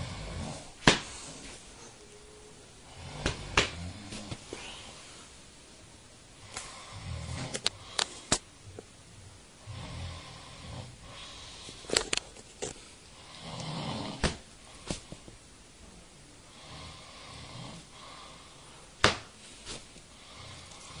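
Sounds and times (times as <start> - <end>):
man snoring heavily: 0.0 - 0.8, 2.8 - 4.2, 6.7 - 8.0, 9.6 - 11.6, 13.2 - 14.2, 16.5 - 18.5, 20.1 - 21.0.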